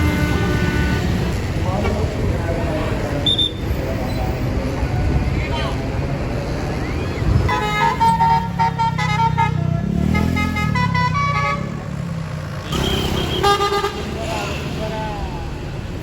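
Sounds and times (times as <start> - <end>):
multi-note bus horn tune: 0.0 - 1.2, 7.5 - 11.8, 12.7 - 14.1
engine running and revving: 9.6 - 13.4.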